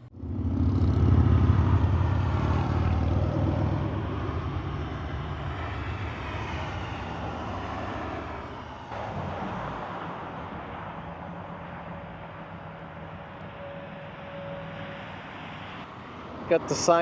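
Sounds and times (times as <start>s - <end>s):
vehicle passing by: 0.0s - 17.0s.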